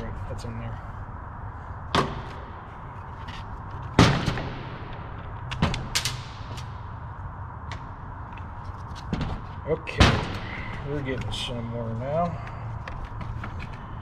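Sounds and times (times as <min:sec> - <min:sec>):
steady low hum: 0:00.0 - 0:14.0
sharp bangs: 0:03.9 - 0:06.9, 0:09.1 - 0:10.9.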